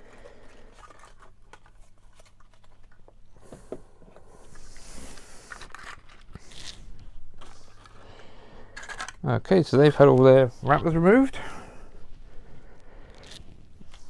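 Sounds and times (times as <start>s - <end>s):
paper wrappers tearing and crinkling: 8.8s - 11.6s.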